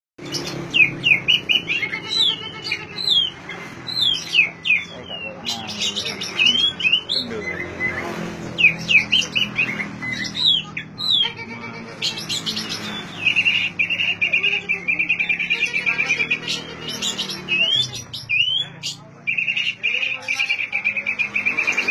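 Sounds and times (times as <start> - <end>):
bird singing whistled notes: 12.2 - 21.9.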